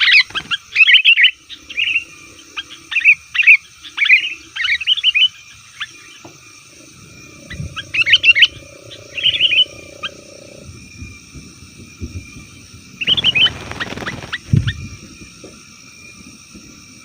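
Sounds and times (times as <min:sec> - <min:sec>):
bulbuls chattering calls: 0:00.0 - 0:10.8, 0:13.0 - 0:14.9
faint steady hum: 0:00.0 - 0:17.0
low rumble: 0:06.5 - 0:13.7.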